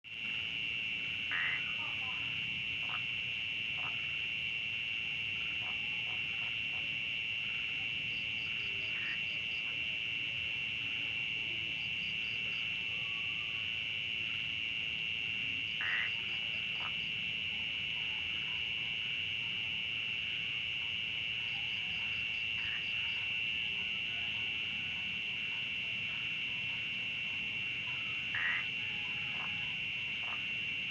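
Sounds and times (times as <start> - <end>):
rapid pulsed frog calls: 0.1 - 30.9
high-pitched insect trill: 0.2 - 30.9
brief low frog calls: 1.3 - 1.8, 15.7 - 17.0, 27.9 - 29.6.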